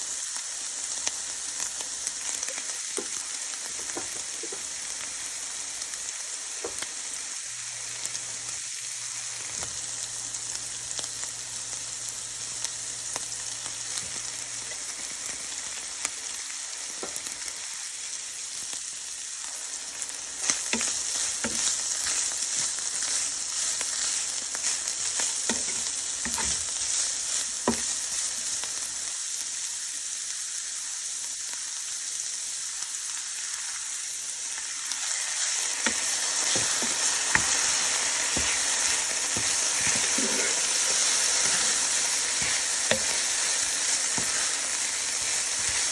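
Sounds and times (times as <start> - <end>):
food sizzling in hot oil: 0.0 - 45.9
utensil tapping against pan: 20.4 - 28.2, 35.9 - 45.9.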